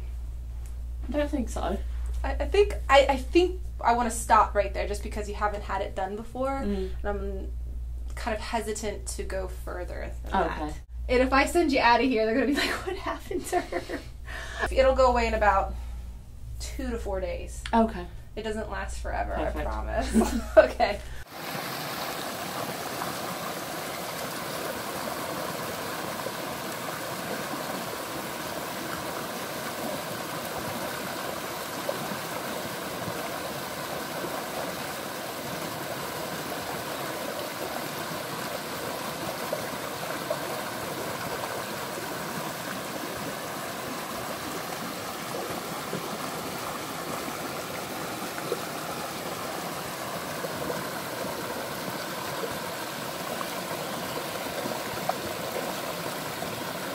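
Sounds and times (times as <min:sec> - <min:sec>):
flowing water rushing: 0:21.2 - 0:56.9.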